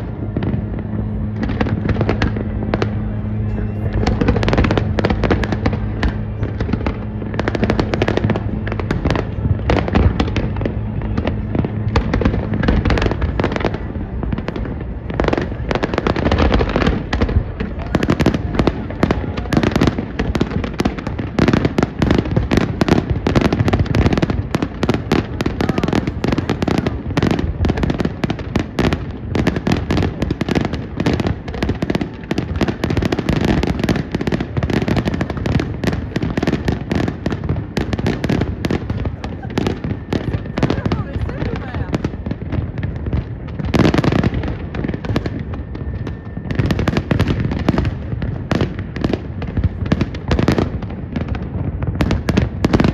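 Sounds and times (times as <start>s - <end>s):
low ship's horn: 0.0s - 16.9s
fireworks bangs and crackles: 0.0s - 52.9s.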